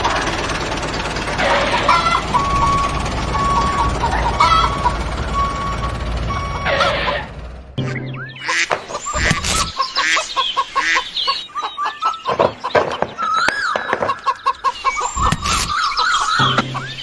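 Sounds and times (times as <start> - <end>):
loud noisy bursts: 0.0 - 7.7
chickens clucking: 0.0 - 17.0
chicken squawks: 1.4 - 2.5, 3.8 - 5.0, 8.4 - 17.0.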